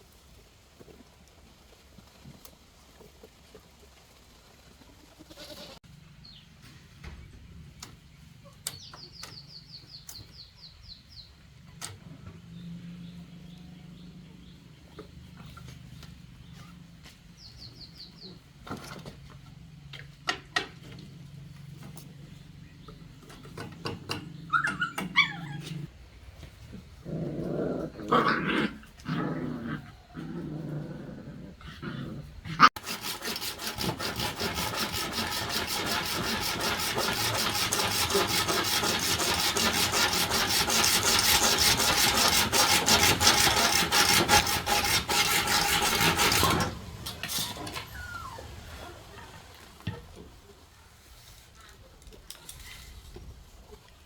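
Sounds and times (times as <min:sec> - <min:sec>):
dog whimpering and growling: 0:24.5 - 0:25.9, 0:47.8 - 0:49.0
rapid rasping of sawing: 0:32.7 - 0:49.1.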